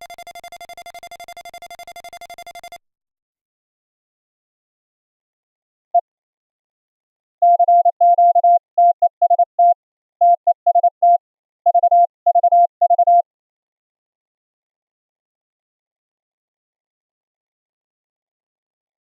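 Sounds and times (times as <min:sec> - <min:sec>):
morse code tone: 0:00.0 - 0:02.8.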